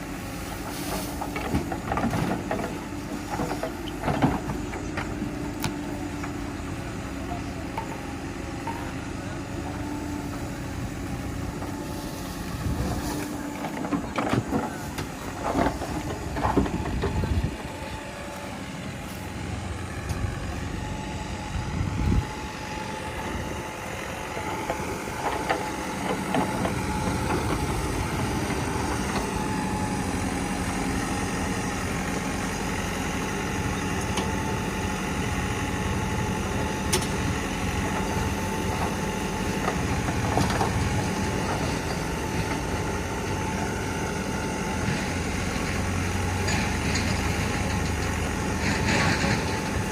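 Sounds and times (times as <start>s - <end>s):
diesel engine running: 0.0s - 49.9s.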